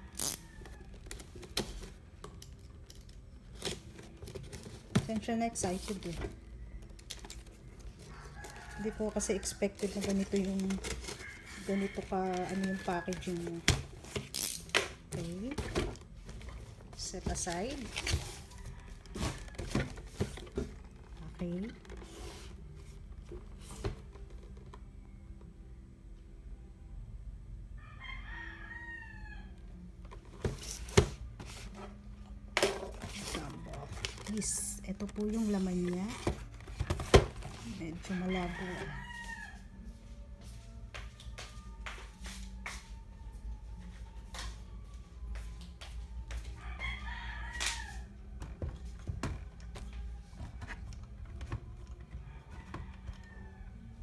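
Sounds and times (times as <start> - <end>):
rooster crowing: 0.0 - 1.0, 8.0 - 10.2, 10.8 - 13.6, 27.8 - 29.6, 37.5 - 40.0, 46.4 - 48.2, 52.0 - 54.0
packaging clicks and knocks: 32.6 - 37.6.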